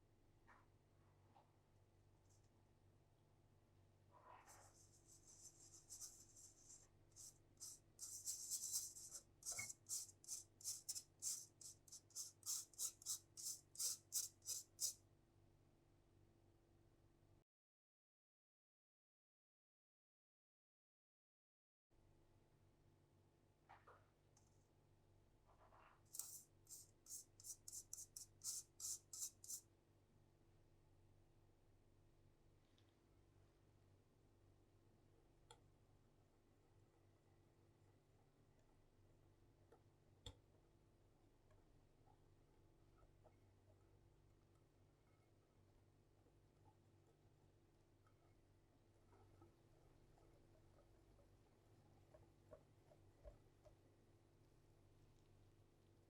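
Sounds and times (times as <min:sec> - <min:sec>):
powder sifted through a sieve: 0:04.3 - 0:15.0, 0:26.0 - 0:29.6
utensil scratching in batter: 0:04.5 - 0:15.0, 0:26.1 - 0:29.6.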